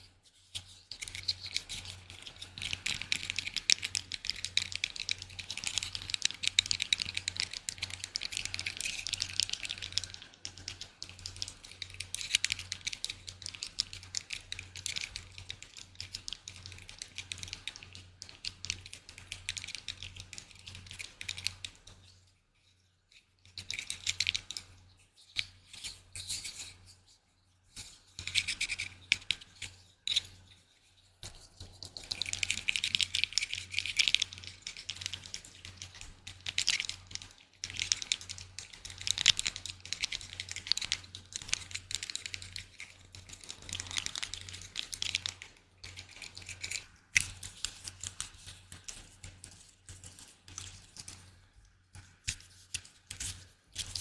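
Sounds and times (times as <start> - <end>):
fine scratching and tapping: 0.0 - 54.0.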